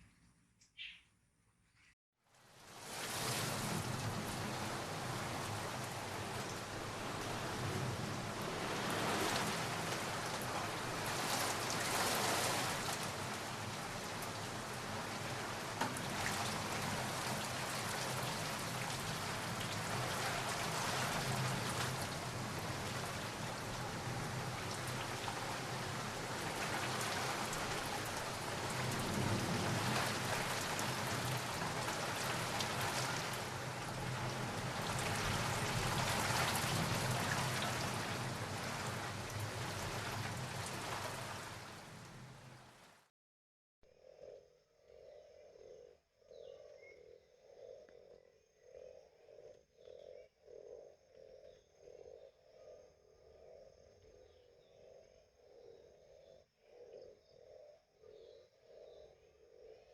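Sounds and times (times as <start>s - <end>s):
steady rain falling: 2.3s - 43.1s.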